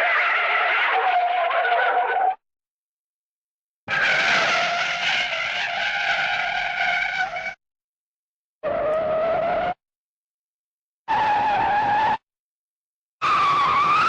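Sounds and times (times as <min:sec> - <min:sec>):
cartoon tire skid squeal: 0:00.0 - 0:02.4, 0:03.9 - 0:07.6, 0:08.6 - 0:09.8, 0:11.1 - 0:12.2, 0:13.2 - 0:14.0.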